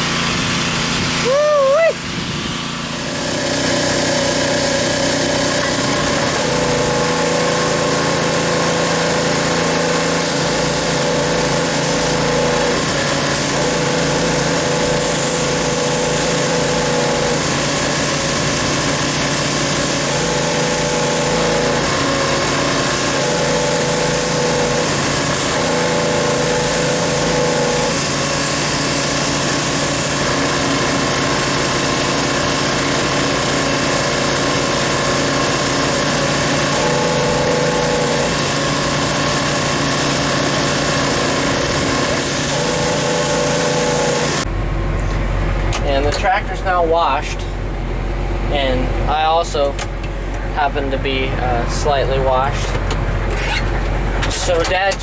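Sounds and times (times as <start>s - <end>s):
pressure washer motor hum: 0.0s - 55.0s
water spray hissing: 5.4s - 44.5s.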